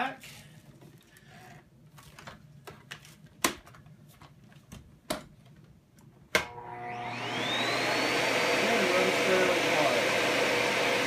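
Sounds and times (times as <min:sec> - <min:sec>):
vacuum motor spinning up: 0:06.4 - 0:11.0.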